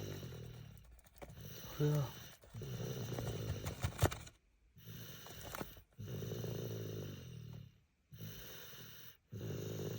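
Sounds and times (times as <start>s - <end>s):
toddler snoring: 8.2s - 9.9s.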